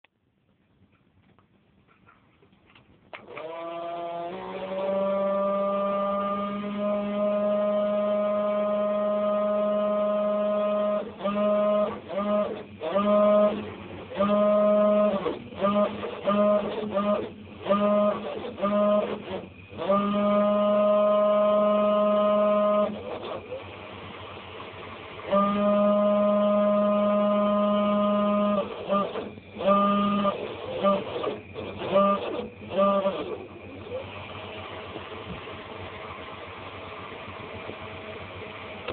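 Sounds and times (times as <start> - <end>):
graphics card fan humming drone: 3.2 - 38.9.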